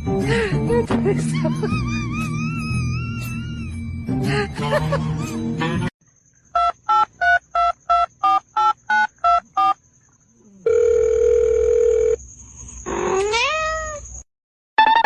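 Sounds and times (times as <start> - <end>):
steady telephone tone: 10.7 - 12.2.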